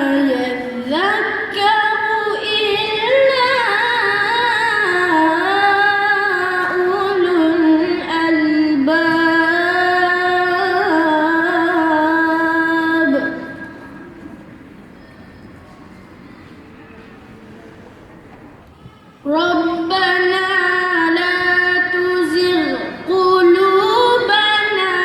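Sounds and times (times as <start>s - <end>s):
boy chanting melodically: 0.0s - 13.8s, 19.0s - 25.0s.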